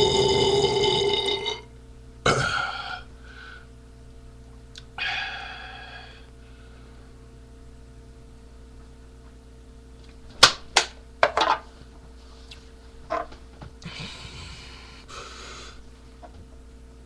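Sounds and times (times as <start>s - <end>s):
man belching: 0.0s - 1.7s, 2.3s - 3.0s.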